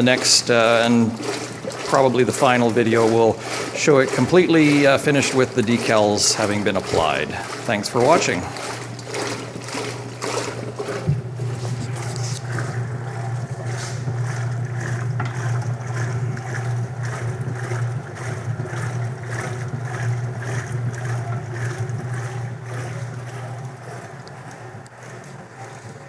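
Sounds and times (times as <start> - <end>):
motor hum: 0.0 - 26.0
water swishing: 0.0 - 26.0.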